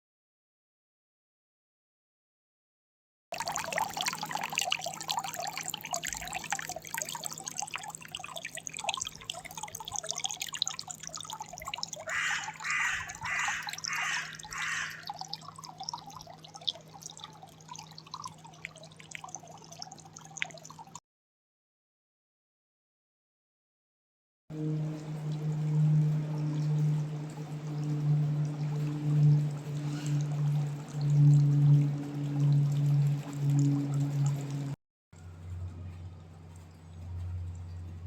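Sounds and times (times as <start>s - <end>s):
water dripping and trickling: 3.3s - 21.0s, 24.5s - 34.8s, 35.4s - 38.0s
faint steady hum: 24.5s - 38.0s.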